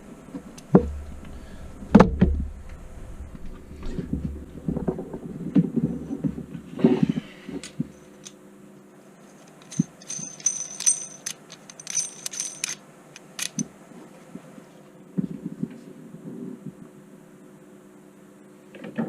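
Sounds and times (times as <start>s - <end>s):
metal connector clinking: 9.4s - 13.7s.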